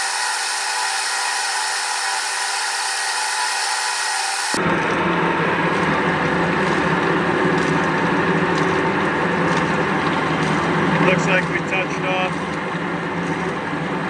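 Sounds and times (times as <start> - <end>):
grinder grinding steel: 0.0 - 4.6, 10.4 - 12.6
low machine hum: 0.0 - 14.0.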